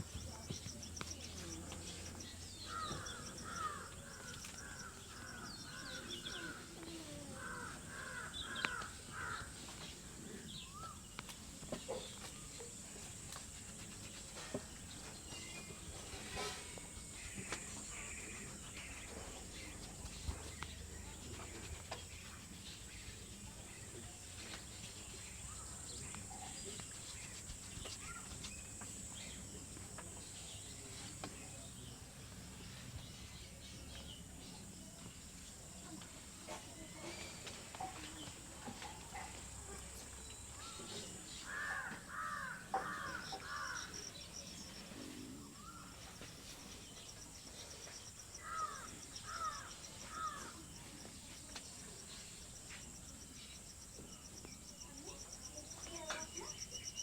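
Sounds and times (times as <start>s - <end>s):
crows cawing: 2.7s - 5.9s, 7.3s - 9.6s, 41.4s - 43.9s, 48.4s - 50.5s.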